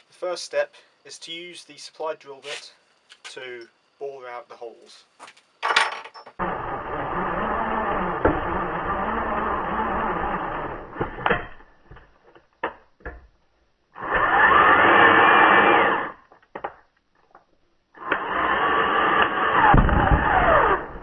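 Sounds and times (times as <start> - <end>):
electric drill running: 6.4 - 11.0, 14.0 - 16.2, 18.0 - 21.0.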